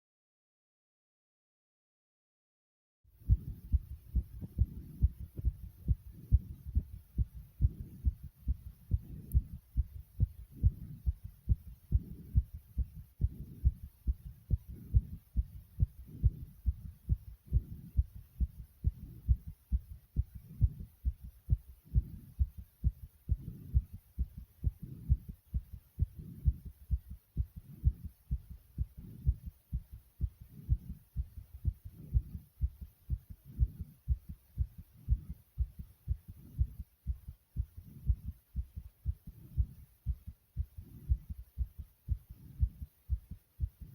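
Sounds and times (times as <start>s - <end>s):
heartbeat thumps: 3.2s - 43.9s.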